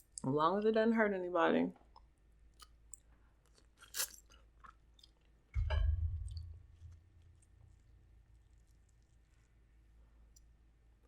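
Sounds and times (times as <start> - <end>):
close chewing with wet clicks: 1.9 - 5.4
low thump: 5.6 - 7.2.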